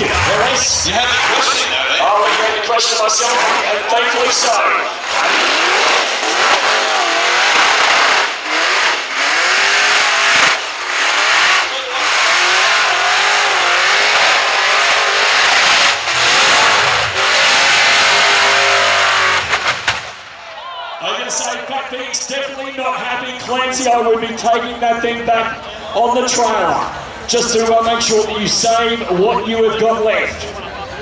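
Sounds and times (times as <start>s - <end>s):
commentators talking: 0.0s - 8.7s, 10.9s - 19.1s, 20.4s - 31.0s
car engine revving hard: 0.0s - 20.2s.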